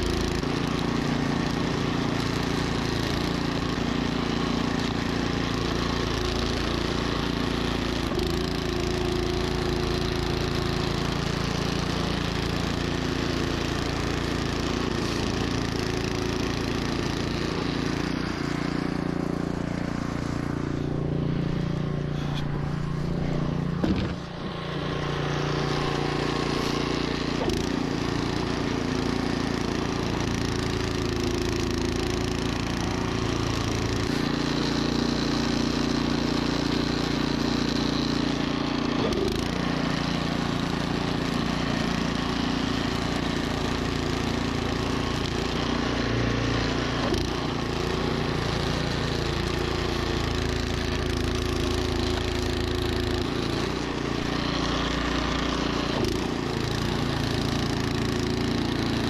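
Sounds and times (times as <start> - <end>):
snowblower engine running: 0.0 - 59.0.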